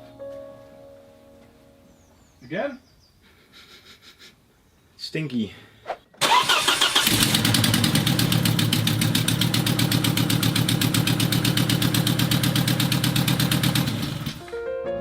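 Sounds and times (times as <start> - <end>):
car engine misfiring: 6.2 - 14.4.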